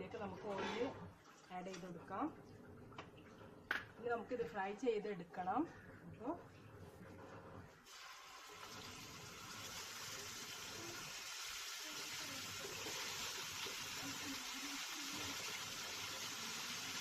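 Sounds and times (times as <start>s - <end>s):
chicken sizzling in oil: 7.8s - 17.0s.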